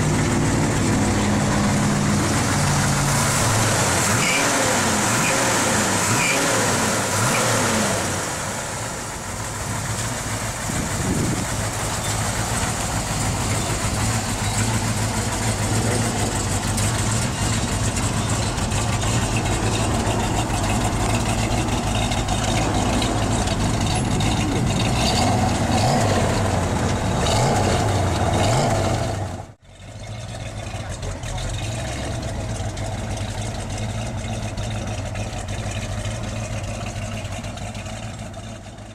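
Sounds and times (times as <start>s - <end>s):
engine idling with burble: 0.0s - 38.9s
engine throttle blips: 0.0s - 38.9s.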